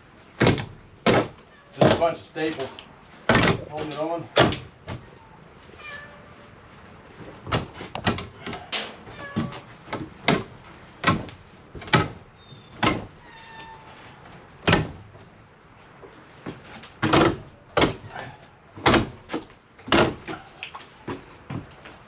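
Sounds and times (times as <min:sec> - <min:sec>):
faint cat meows: 0:01.4 - 0:01.9, 0:05.1 - 0:06.6, 0:08.4 - 0:09.7, 0:13.2 - 0:14.2.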